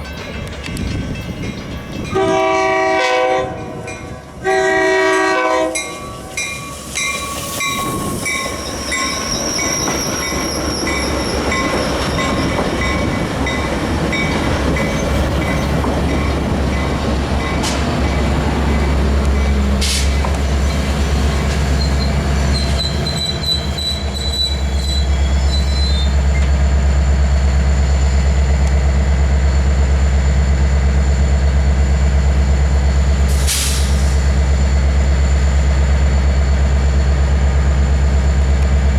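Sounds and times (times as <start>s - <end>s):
diesel locomotive engine throbbing: 0.0s - 38.9s
rail rumble: 0.0s - 38.9s
train wheels squealing: 5.8s - 26.6s.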